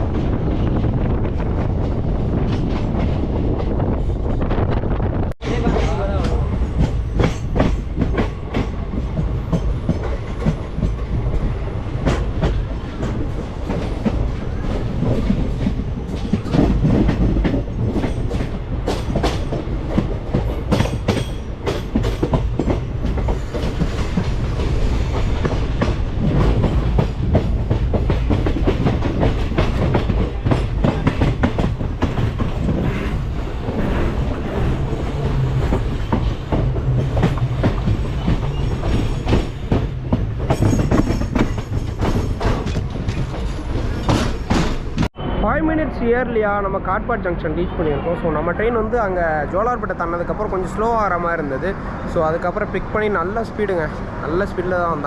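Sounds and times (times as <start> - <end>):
train rumbling: 0.0 - 55.0
wheels clattering over rail joints: 5.4 - 45.1.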